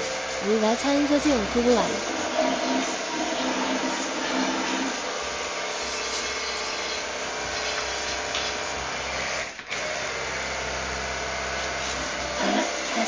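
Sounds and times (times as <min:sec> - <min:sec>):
pressure washer spraying water: 0:00.0 - 0:09.4.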